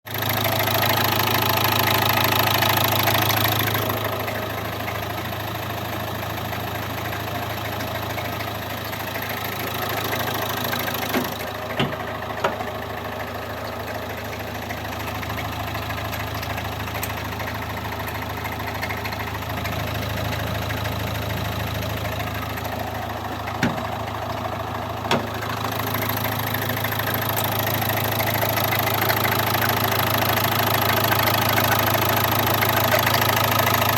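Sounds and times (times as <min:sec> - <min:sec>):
diesel engine idling: 0:00.1 - 0:33.9
knocking and grinding noise: 0:11.0 - 0:12.8, 0:23.3 - 0:24.1, 0:25.1 - 0:25.5.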